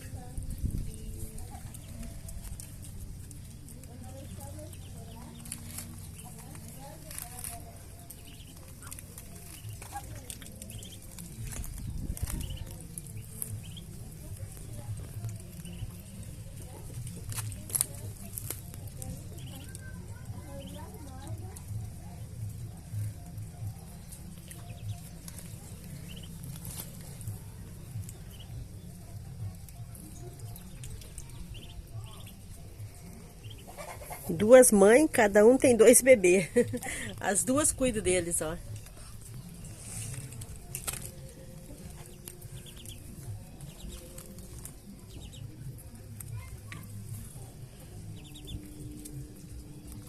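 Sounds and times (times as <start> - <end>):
steady low rumble: 0.0 - 34.2
chicks peeping: 0.0 - 50.0
small birds chirping: 0.0 - 50.0
hens clucking low: 33.3 - 34.5.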